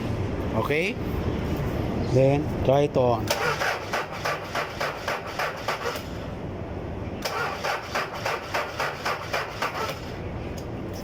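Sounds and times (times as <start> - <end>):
diesel engine cranking on starter: 3.3 - 6.2, 7.2 - 10.2.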